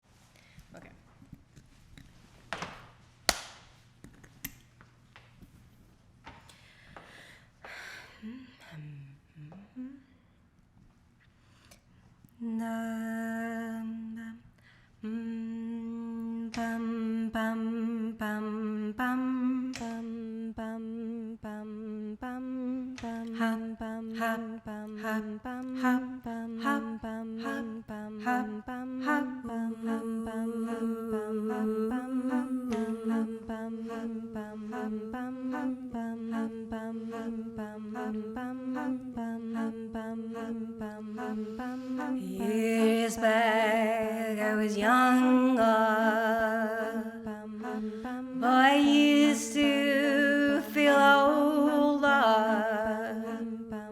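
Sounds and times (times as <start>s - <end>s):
woman humming: 8.2s - 10.2s.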